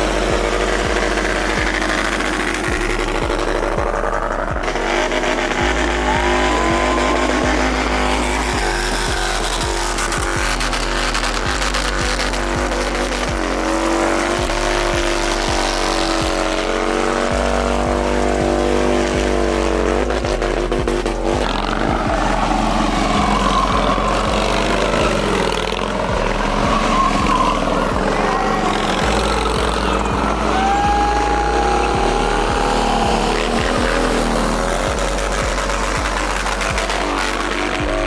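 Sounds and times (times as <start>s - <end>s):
background music: 0.0s - 38.0s
vehicle engine revving: 0.0s - 38.0s.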